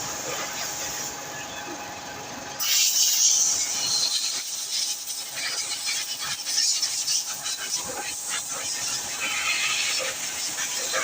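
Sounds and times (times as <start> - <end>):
pressure washer spraying water: 2.6 - 11.0.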